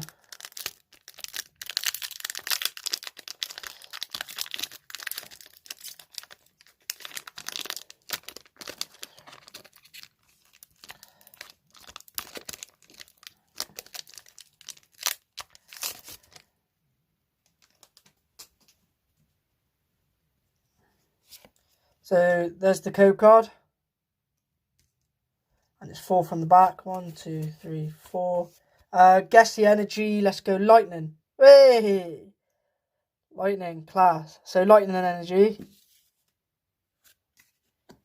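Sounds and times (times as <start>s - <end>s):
foil wrapper tearing and crinkling: 0.0s - 16.4s.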